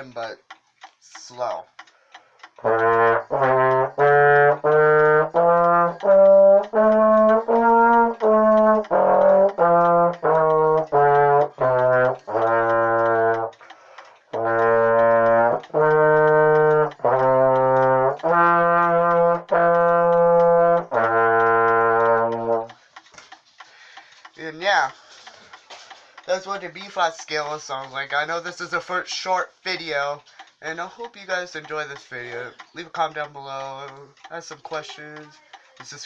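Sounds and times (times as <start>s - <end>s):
man talking: 0.0s - 1.8s, 24.4s - 25.0s, 26.3s - 36.0s
trombone playing a scale: 2.6s - 13.6s, 14.3s - 22.8s.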